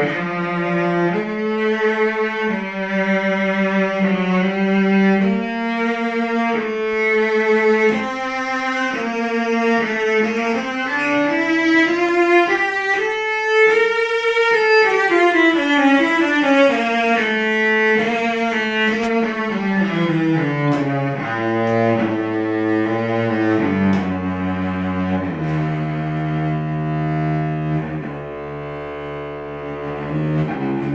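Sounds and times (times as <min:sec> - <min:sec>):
bowed cello melody: 0:00.0 - 0:30.9.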